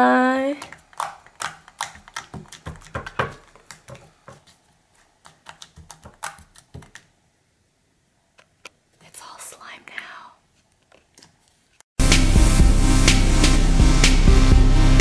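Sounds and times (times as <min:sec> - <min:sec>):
slime squishing with clicking pops: 0:00.6 - 0:04.6, 0:05.2 - 0:07.1.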